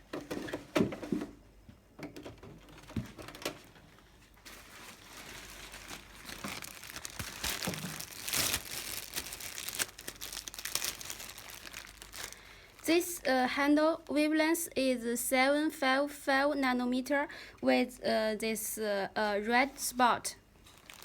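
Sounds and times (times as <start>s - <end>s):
rustling: 2.6s - 12.9s, 20.6s - 21.0s.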